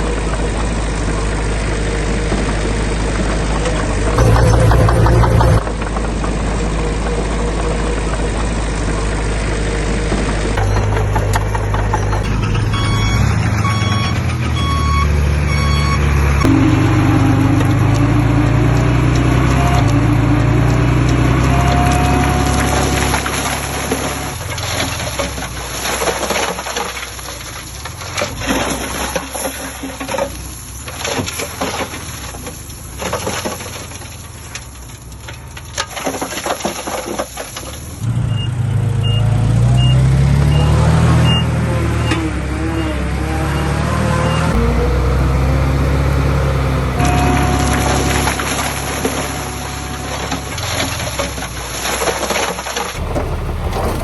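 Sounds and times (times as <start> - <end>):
diesel machinery engine running: 0.0 - 29.6, 37.8 - 54.0
reversing beeper: 4.2 - 5.7, 10.6 - 24.5, 43.5 - 52.0, 53.0 - 54.0.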